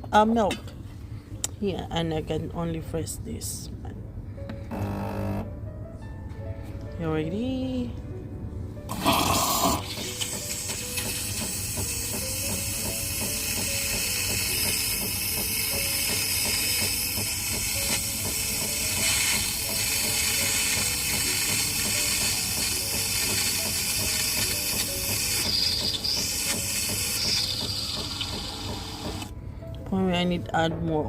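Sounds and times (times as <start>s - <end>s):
espresso machine steam hissing: 8.9s - 29.3s.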